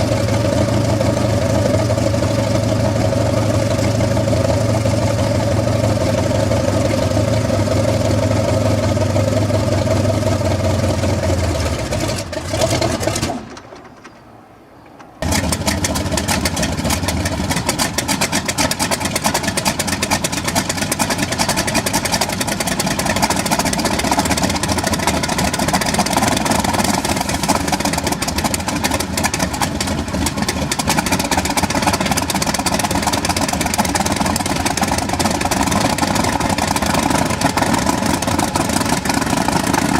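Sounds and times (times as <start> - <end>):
helicopter engine running: 15.2 - 39.9.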